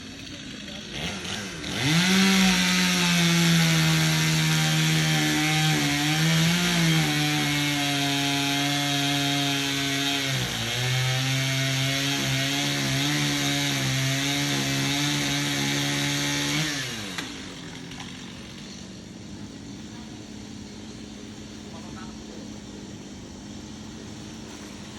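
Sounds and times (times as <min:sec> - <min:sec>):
chainsaw cutting wood: 0:00.0 - 0:24.9.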